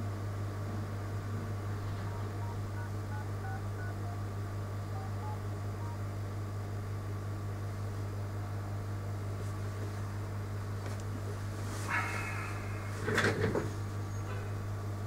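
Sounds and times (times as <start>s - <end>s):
low electrical hum: 0.0s - 15.0s
phone keypad touch tones: 2.0s - 6.0s.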